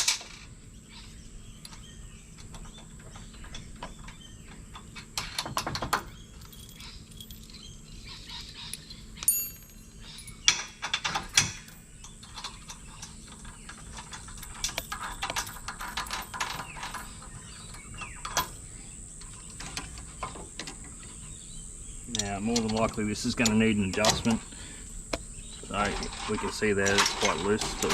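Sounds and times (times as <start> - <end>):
metal clanks and knocks: 10.4 - 18.6, 22.1 - 24.5, 25.1 - 27.9.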